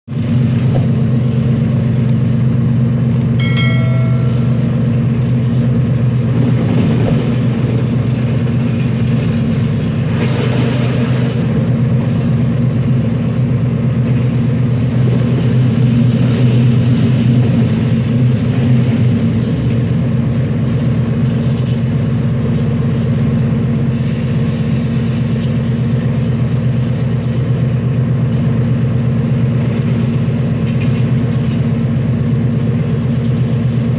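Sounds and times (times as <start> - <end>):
locomotive engine humming: 0.1 - 33.9
brief high tone: 3.4 - 5.1.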